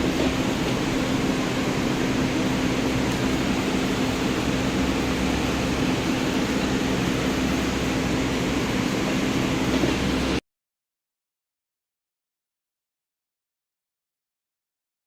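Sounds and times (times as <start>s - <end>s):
car engine idling with knocking: 0.0s - 10.4s.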